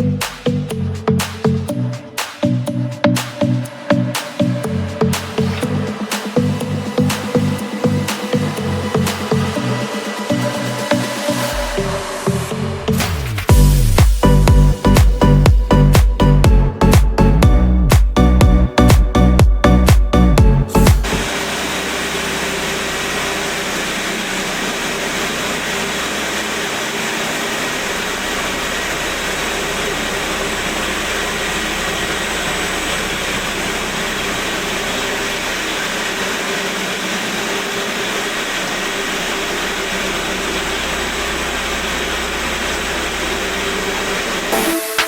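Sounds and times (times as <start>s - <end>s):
concrete grinding machine running: 3.0s - 16.4s, 20.4s - 45.0s.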